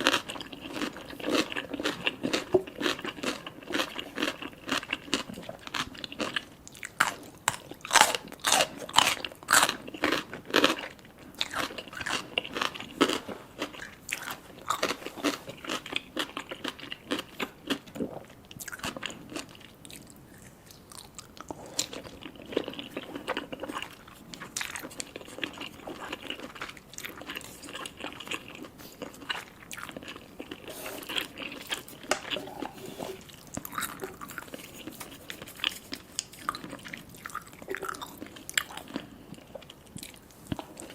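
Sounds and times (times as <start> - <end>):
soft chewing: 0.0 - 40.9.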